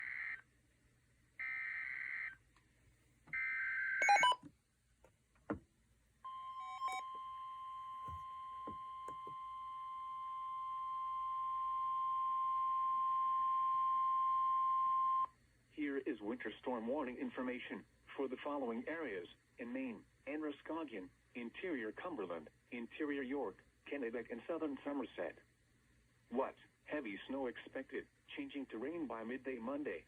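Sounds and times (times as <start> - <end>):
steady warning alarm tone: 6.3 - 7.0.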